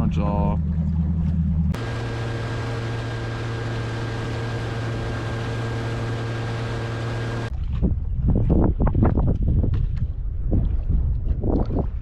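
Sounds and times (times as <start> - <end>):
boat motor humming: 0.0 - 7.5.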